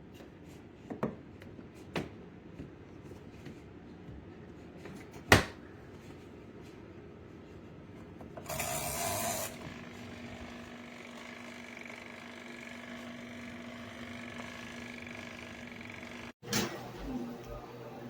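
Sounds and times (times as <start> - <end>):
washing machine humming: 8.4 - 18.0.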